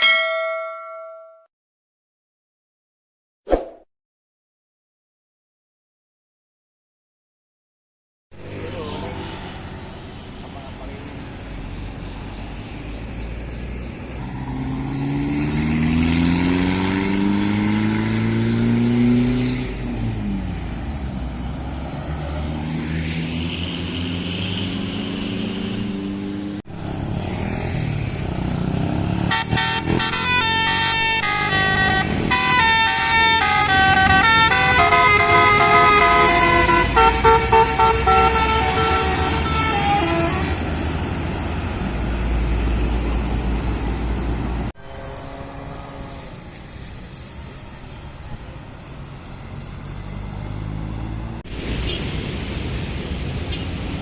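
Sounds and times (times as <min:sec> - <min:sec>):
bus engine accelerating: 0:08.4 - 0:54.0
multi-note bus horn melody: 0:29.2 - 0:40.8, 0:44.8 - 0:48.4.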